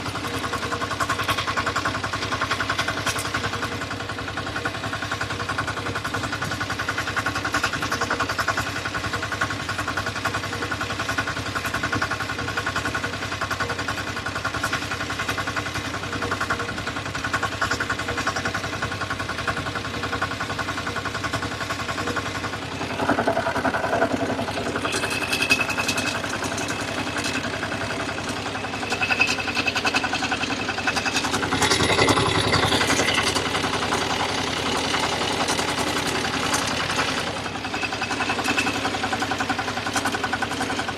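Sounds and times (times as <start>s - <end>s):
combine harvester engine running: 0.0s - 40.9s
steady high whine: 22.4s - 34.7s.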